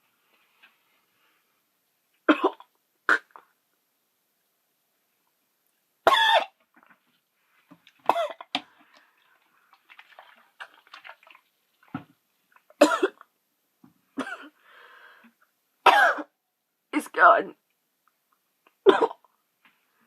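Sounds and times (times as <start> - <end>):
woman coughing: 2.3 - 3.3, 6.1 - 6.6, 8.1 - 8.5, 12.8 - 13.2, 14.2 - 14.6, 15.9 - 16.3, 18.8 - 19.3.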